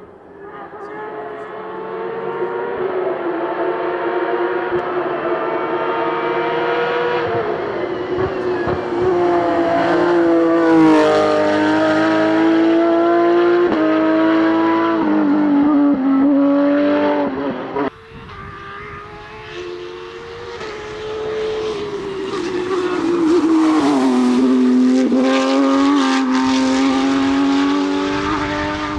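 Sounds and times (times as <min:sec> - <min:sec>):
rally car engine revving: 0:00.0 - 0:28.9.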